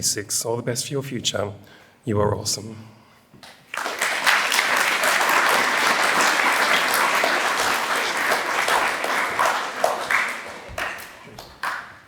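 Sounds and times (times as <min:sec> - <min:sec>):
audience applauding: 0:03.7 - 0:12.0.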